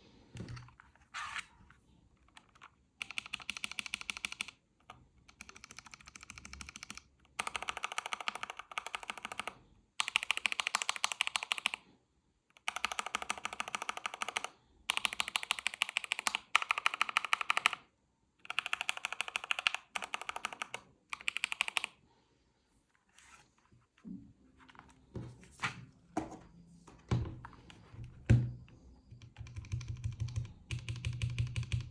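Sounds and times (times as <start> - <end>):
mechanical keyboard keystrokes: 2.3 - 4.6, 5.3 - 11.8, 12.6 - 17.8, 18.5 - 21.9, 27.7 - 31.9.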